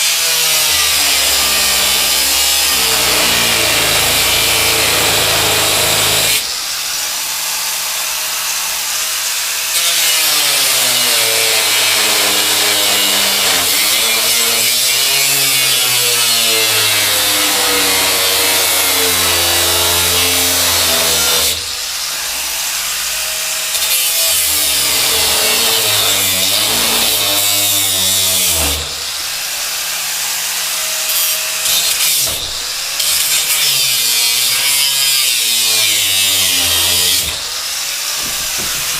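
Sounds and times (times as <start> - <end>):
power tool cutting metal: 0.0 - 38.9.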